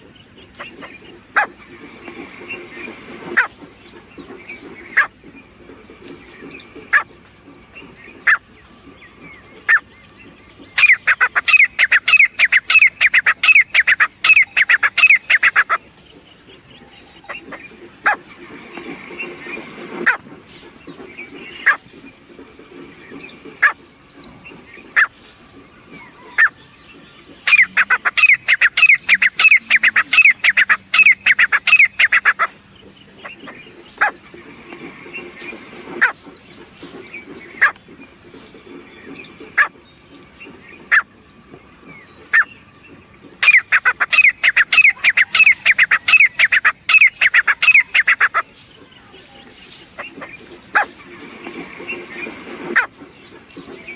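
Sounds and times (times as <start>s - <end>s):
bird calling rapid repeated notes: 0.0s - 5.3s, 6.4s - 8.5s, 10.6s - 16.0s, 23.2s - 25.3s, 26.0s - 38.1s, 43.4s - 48.6s.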